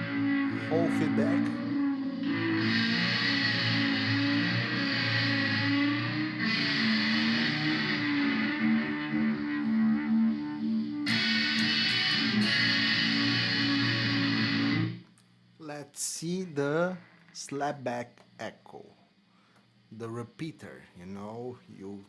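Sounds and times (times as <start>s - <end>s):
electric guitar chorus chords: 0.0s - 15.0s
guitar pick attacks: 0.0s - 15.0s.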